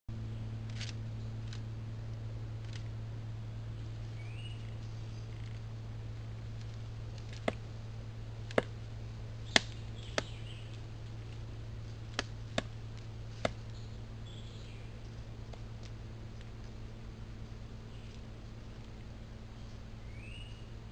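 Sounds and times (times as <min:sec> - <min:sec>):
steady low hum: 0:00.1 - 0:20.9
woodpecker pecking at a tree: 0:06.4 - 0:07.7, 0:08.3 - 0:14.0.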